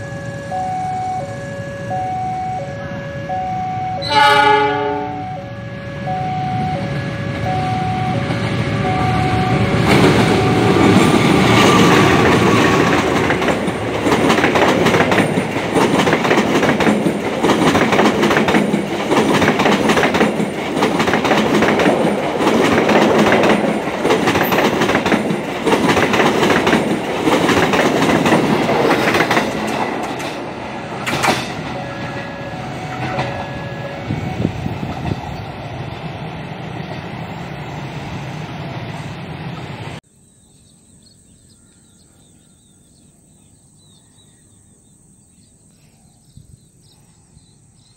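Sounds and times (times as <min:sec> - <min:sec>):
electronic alarm beeping: 0:00.0 - 0:04.2, 0:05.0 - 0:11.0
train wheels clattering over rails: 0:09.4 - 0:31.8, 0:34.3 - 0:36.0.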